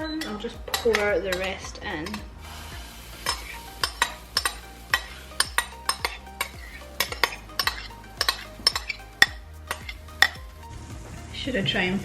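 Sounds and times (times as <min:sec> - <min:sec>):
metal utensil clinking against bowl: 0:00.1 - 0:02.3, 0:03.2 - 0:10.4.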